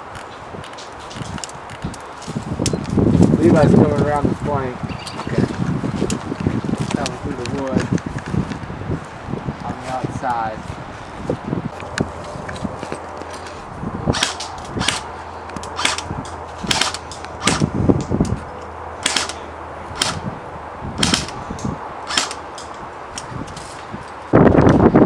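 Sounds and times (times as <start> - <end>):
wind noise on microphone: 0.0 - 25.0
airsoft gun shots: 16.7 - 17.7, 19.0 - 19.4, 21.0 - 21.4, 22.1 - 22.4.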